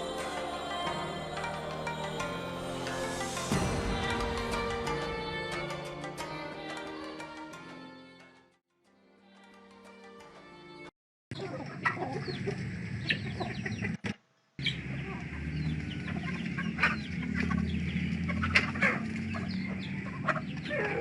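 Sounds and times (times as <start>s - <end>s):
background music: 0.0s - 10.9s
chickens clucking: 11.3s - 21.0s.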